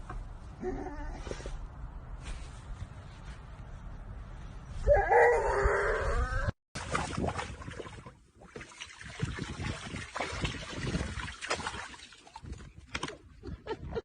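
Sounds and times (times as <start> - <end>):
rustling: 1.2 - 4.9.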